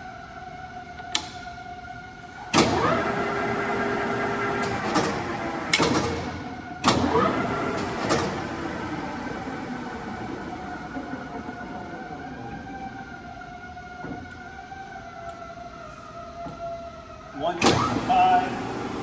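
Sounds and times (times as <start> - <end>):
gear train whine: 0.0 - 19.0
lathe gearing running: 17.5 - 19.0.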